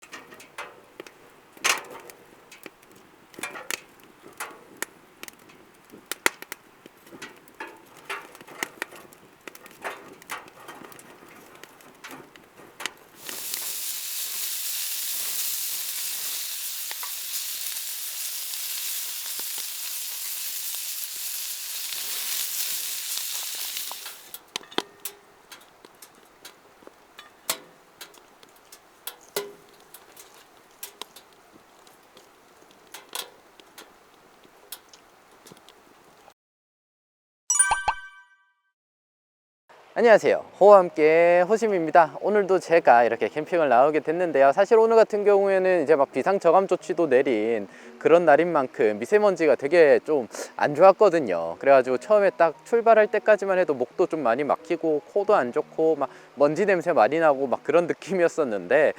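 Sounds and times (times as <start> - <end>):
fat popping and crackling: 0.0 - 36.3
pork sizzling on a griddle: 13.1 - 36.3.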